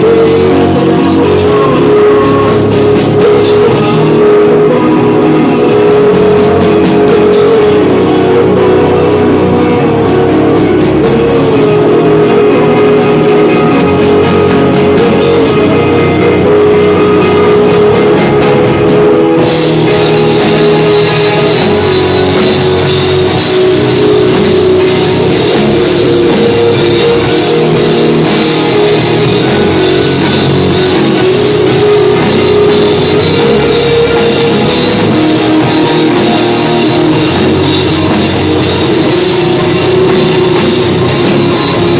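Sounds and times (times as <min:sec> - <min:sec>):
rock band playing live: 0:00.0 - 0:41.9
cymbals crashing: 0:19.3 - 0:41.9.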